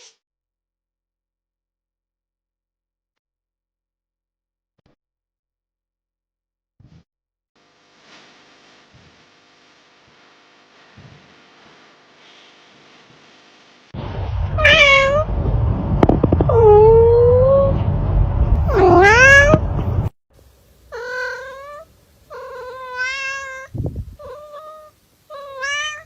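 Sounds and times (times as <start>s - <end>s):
short low thump: 14.0s - 20.1s
heavy low rumble: 14.0s - 20.2s, 23.7s - 24.3s
cat meowing: 14.6s - 15.3s, 16.5s - 17.8s, 18.6s - 19.6s, 20.9s - 26.0s.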